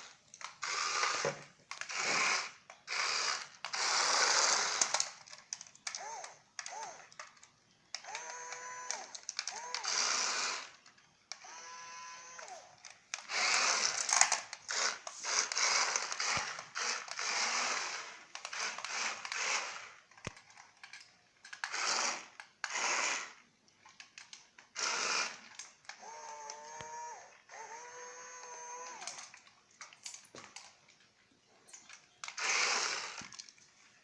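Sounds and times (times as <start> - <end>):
plastic toy parts clicking and rattling: 0.0 - 11.7, 12.3 - 34.0.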